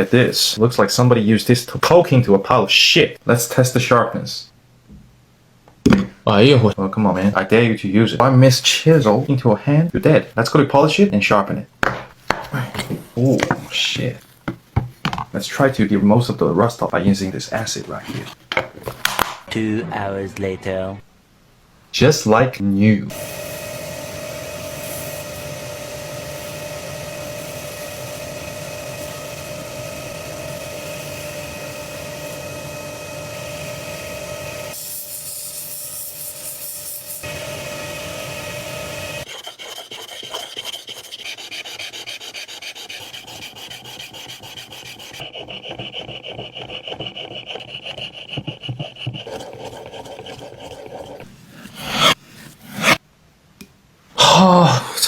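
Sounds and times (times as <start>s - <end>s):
chisel blade rasping on stone: 39.2s - 53.0s
quick scraping strokes: 39.3s - 53.0s.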